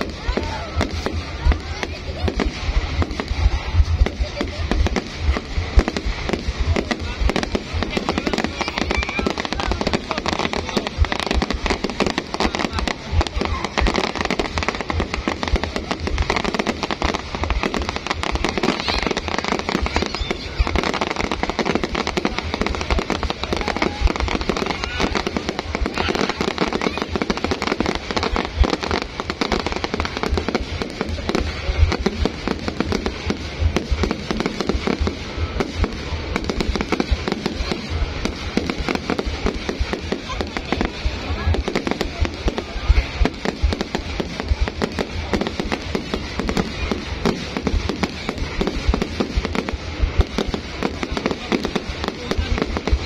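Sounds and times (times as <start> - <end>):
fireworks bangs and crackles: 0.0 - 53.0
voices: 0.0 - 53.0.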